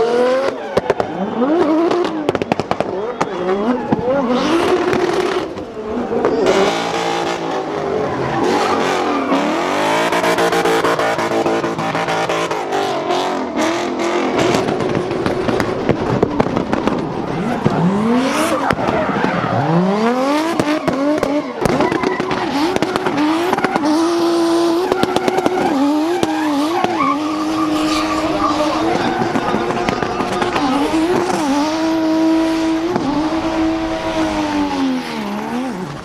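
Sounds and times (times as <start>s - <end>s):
car engines revving hard: 0.0s - 36.0s
exhaust pops: 14.2s - 19.7s, 24.8s - 32.0s
tyres squealing: 20.4s - 34.2s.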